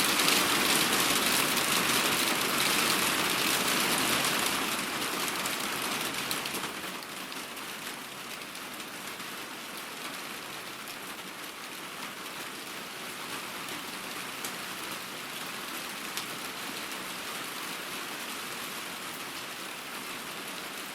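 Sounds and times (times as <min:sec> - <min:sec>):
heavy rain falling: 0:00.0 - 0:20.9.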